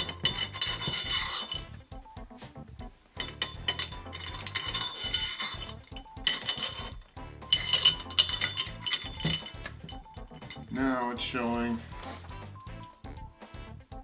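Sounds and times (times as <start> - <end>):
metal parts clinking and rattling: 0.0 - 2.3, 3.1 - 11.0.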